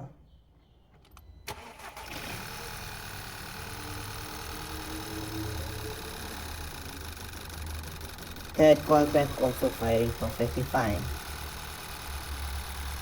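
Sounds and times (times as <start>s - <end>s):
click: 1.0s - 1.3s
car engine idling roughly: 1.6s - 13.0s.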